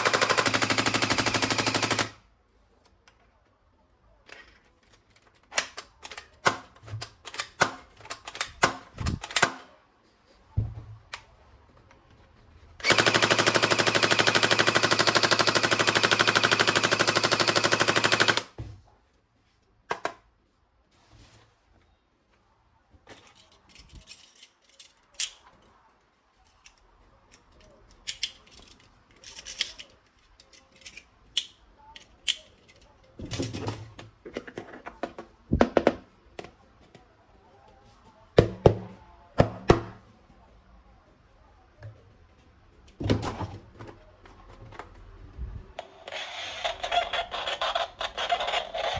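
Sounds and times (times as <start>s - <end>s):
toy gun rapid-fire rattle: 0.0s - 2.2s, 12.8s - 18.5s, 46.1s - 48.9s
plastic toy guns clicking: 5.2s - 9.7s, 12.8s - 18.5s, 23.7s - 25.4s, 27.6s - 32.9s.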